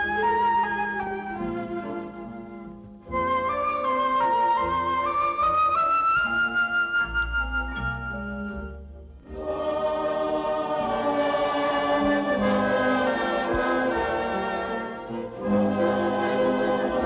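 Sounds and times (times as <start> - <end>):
orchestra: 0.0 - 17.0
choir singing held chords: 9.2 - 17.0.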